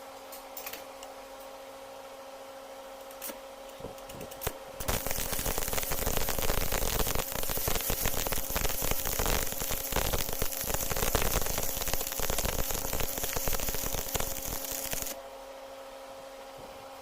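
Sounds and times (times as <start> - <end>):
welding arc crackling: 4.3 - 15.2.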